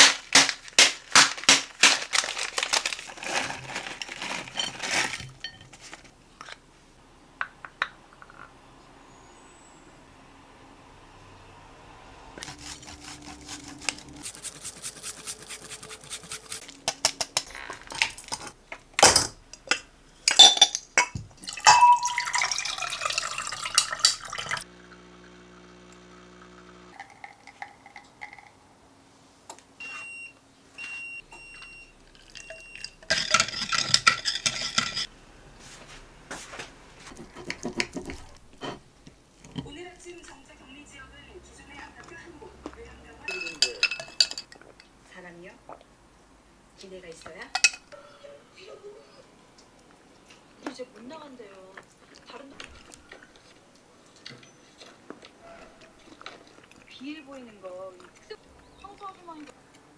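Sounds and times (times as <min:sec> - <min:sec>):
dishes and utensils clattering: 0:00.0 - 0:06.6, 0:13.2 - 0:22.5, 0:23.2 - 0:24.6, 0:32.2 - 0:35.1, 0:37.0 - 0:39.8, 0:43.2 - 0:44.9, 0:47.5 - 0:48.1
water running: 0:12.4 - 0:18.6, 0:20.8 - 0:28.5.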